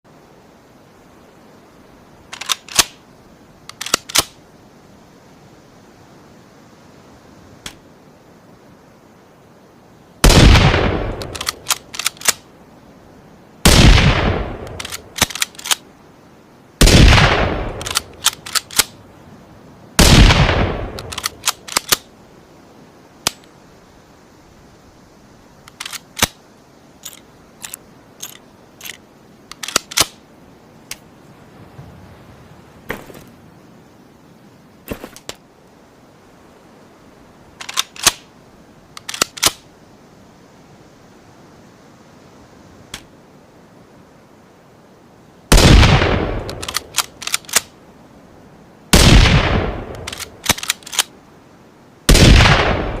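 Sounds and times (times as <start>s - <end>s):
rifle shots: 10.2s - 12.4s, 13.7s - 15.8s, 16.8s - 18.9s, 20.0s - 22.0s, 45.5s - 47.6s, 49.0s - 51.1s, 52.1s - 53.0s
rifle bolt clicking: 11.2s - 12.4s, 21.0s - 22.1s, 46.4s - 47.7s, 50.0s - 51.1s.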